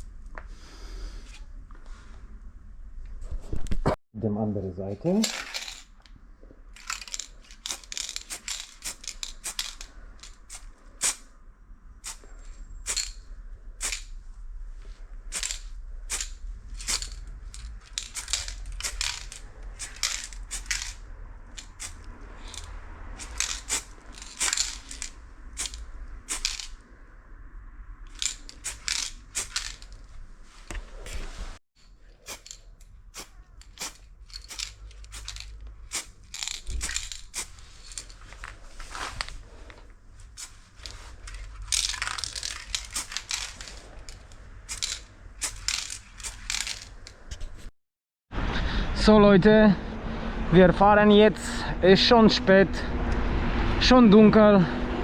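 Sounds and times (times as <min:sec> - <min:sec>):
aerosol spray can hissing: 0:07.0 - 0:09.9, 0:10.5 - 0:11.3, 0:12.0 - 0:12.3, 0:15.3 - 0:21.0, 0:21.6 - 0:26.7, 0:28.2 - 0:29.9, 0:32.3 - 0:32.6, 0:33.2 - 0:38.0, 0:42.2 - 0:43.8, 0:44.7 - 0:46.9.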